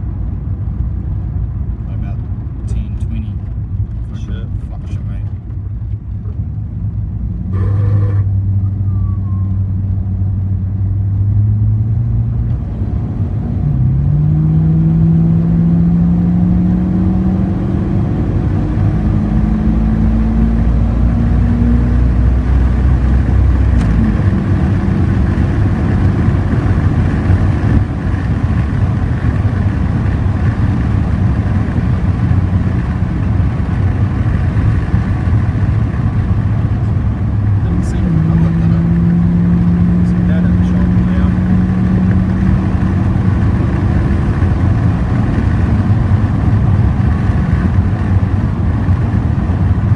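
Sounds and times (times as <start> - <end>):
car running with rumble: 0.0 - 49.9
transmission whining: 7.3 - 10.0.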